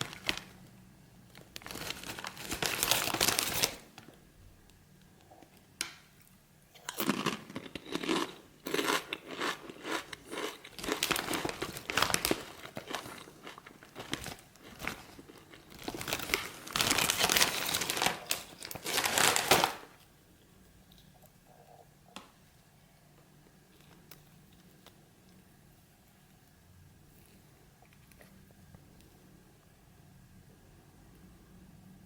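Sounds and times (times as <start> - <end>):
plastic chip bag crinkling: 0.0 - 3.9, 6.9 - 20.0
crunching potato chips: 1.4 - 3.9, 6.8 - 19.9.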